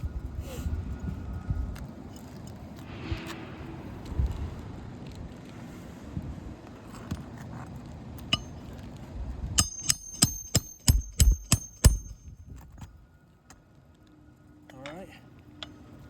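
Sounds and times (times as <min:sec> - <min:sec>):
hammer striking metal tool: 0:08.3 - 0:08.6, 0:09.6 - 0:12.3.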